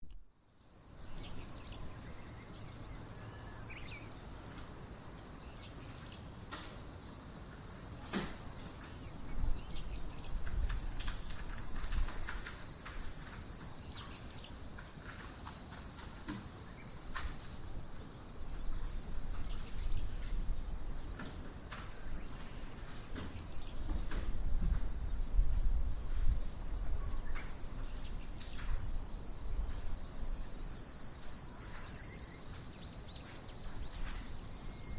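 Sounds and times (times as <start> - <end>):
insects trilling: 0.1 - 34.9
faint ticks: 9.9 - 16.4.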